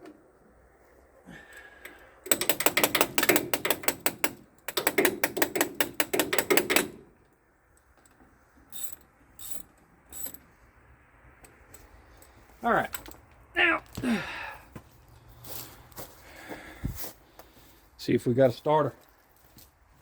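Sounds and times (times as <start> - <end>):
socket ratchet clicking: 2.2 - 7.0.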